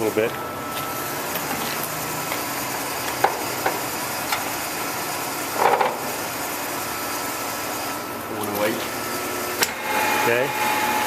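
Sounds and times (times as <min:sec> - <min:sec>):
lathe headstock whirring: 0:08.8 - 0:11.0.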